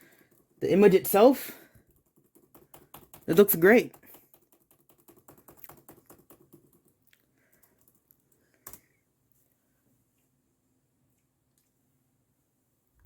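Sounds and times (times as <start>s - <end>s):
laptop keyboard clicking: 1.8s - 8.9s.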